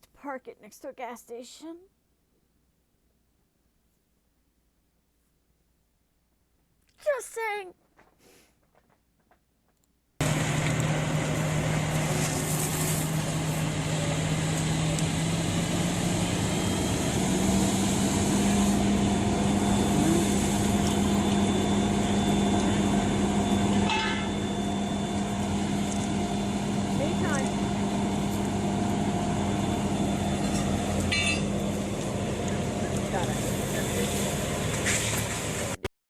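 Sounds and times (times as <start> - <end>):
outdoor noise: 0.0 - 35.9
low engine hum: 10.2 - 35.9.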